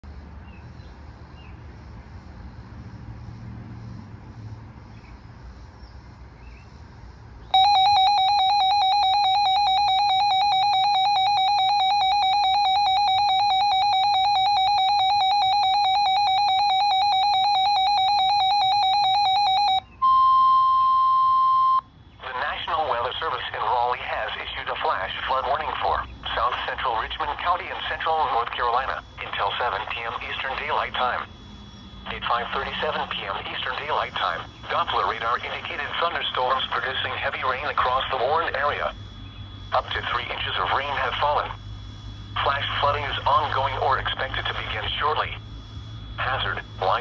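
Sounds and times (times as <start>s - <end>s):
fast-pulsing electronic beep: 7.5s - 19.8s, 25.6s - 47.0s
steady alarm beep: 7.5s - 23.4s, 25.2s - 47.0s.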